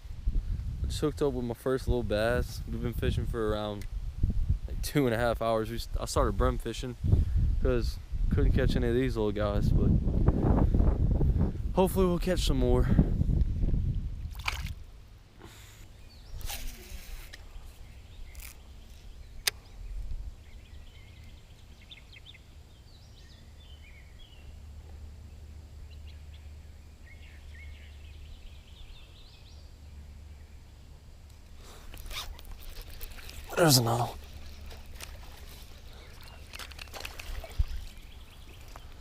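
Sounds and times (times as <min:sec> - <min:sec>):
wind rumble on microphone: 0:00.0 - 0:14.9, 0:19.1 - 0:24.4, 0:32.0 - 0:39.0.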